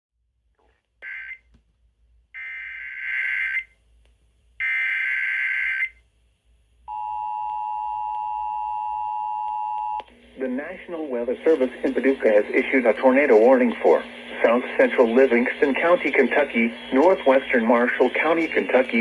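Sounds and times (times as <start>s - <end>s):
digital header data bursts: 11.4s - 19.0s.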